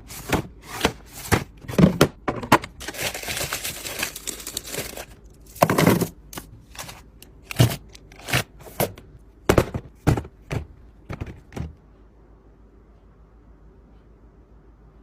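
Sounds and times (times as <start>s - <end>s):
kitchen items knocking and clicking: 0.1s - 11.8s.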